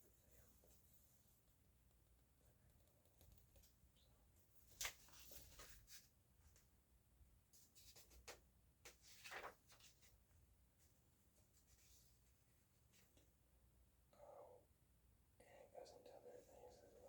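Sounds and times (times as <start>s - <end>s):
book pages rustling: 4.6s - 6.6s, 7.6s - 10.2s.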